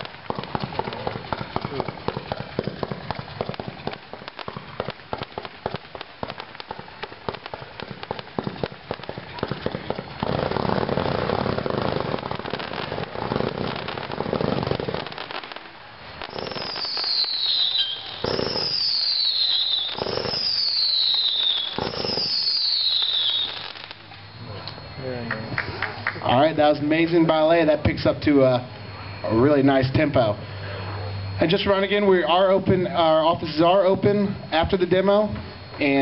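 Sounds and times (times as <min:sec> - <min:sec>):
fireworks cake firing: 0:00.0 - 0:36.0
falling whistles with bangs: 0:16.2 - 0:24.2.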